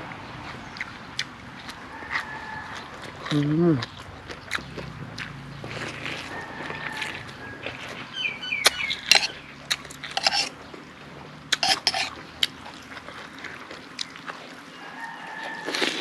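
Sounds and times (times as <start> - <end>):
wet eating noises: 0.0 - 16.0
spoon and dishes clinking: 11.6 - 12.1.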